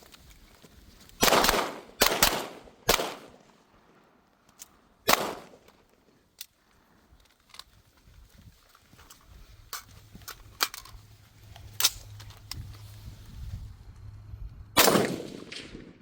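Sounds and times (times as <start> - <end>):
gunshots with echo: 1.2 - 3.3, 5.1 - 5.6, 14.8 - 16.0.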